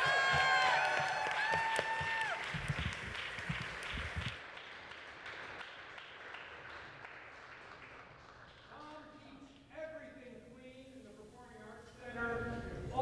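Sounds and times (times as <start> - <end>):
audience applauding: 0.0 - 8.8.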